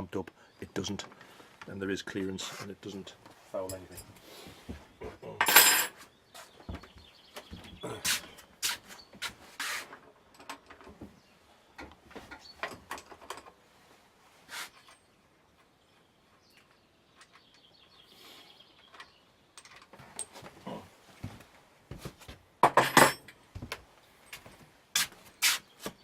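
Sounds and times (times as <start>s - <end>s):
metal tools clinking on bike fork: 5.4s - 5.9s, 18.8s - 20.4s, 22.7s - 23.4s.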